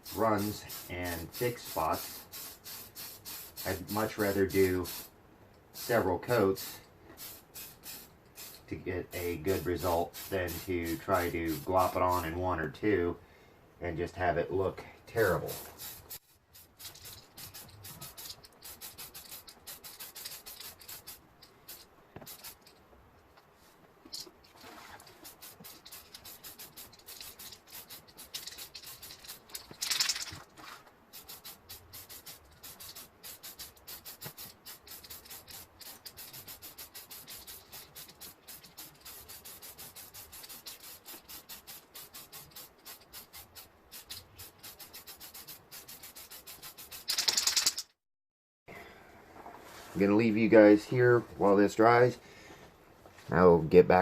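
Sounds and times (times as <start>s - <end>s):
aerosol spray can hissing: 0.0s - 5.1s, 5.8s - 12.2s, 15.2s - 22.7s, 24.7s - 29.6s, 31.1s - 47.8s.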